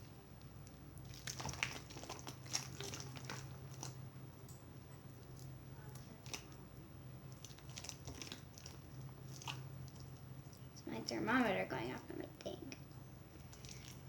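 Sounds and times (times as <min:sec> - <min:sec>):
slime squelching by hand: 0:00.9 - 0:04.2, 0:05.0 - 0:10.8, 0:12.8 - 0:14.0.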